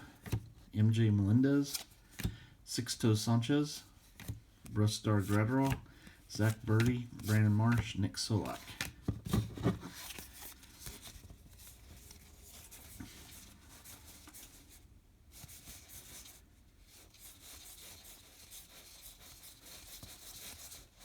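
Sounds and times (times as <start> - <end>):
cards rustling and scraping: 0.1 - 0.7, 1.4 - 2.4, 3.1 - 16.4.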